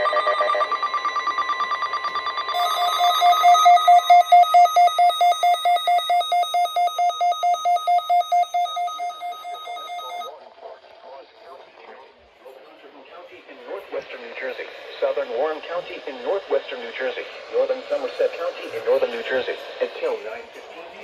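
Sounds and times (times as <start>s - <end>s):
fast pulsing two-note beep: 0.0s - 10.3s
steady alarm tone: 0.0s - 10.3s, 13.6s - 20.9s.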